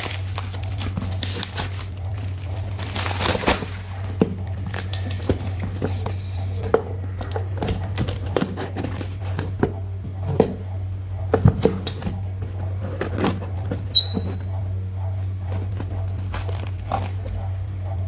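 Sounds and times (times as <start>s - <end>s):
packaging crinkling: 0.0s - 6.2s
steady low hum: 0.0s - 18.0s.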